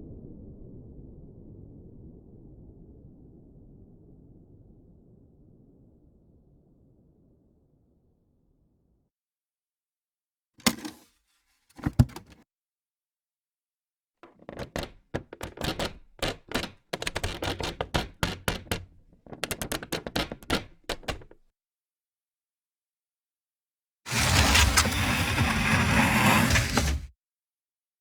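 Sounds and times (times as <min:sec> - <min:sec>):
wooden knock: 0:11.8 - 0:12.4, 0:14.2 - 0:21.4
wood clicking and cracking: 0:14.3 - 0:21.4.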